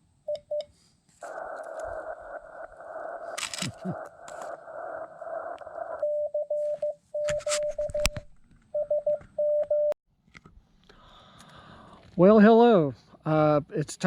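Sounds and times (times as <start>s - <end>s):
radio band hiss: 1.1s - 6.0s
sharp clicks: 1.2s - 6.0s
morse code beeps: 6.0s - 8.2s, 8.8s - 10.0s.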